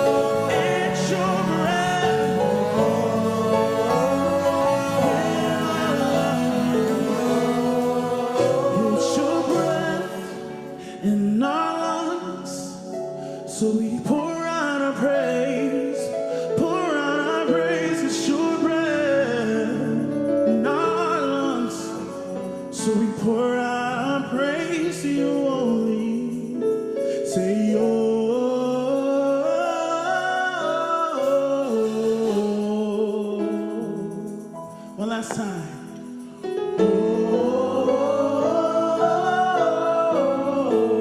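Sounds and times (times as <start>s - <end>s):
choir singing gospel: 0.0s - 12.8s, 27.6s - 34.1s, 35.2s - 41.0s.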